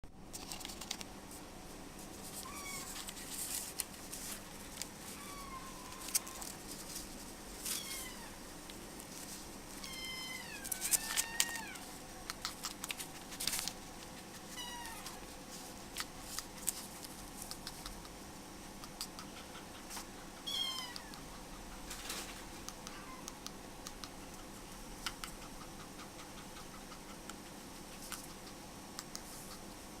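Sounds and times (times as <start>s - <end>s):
kitten mewing: 2.4s - 3.0s, 5.1s - 6.5s, 14.5s - 15.2s, 20.3s - 21.3s.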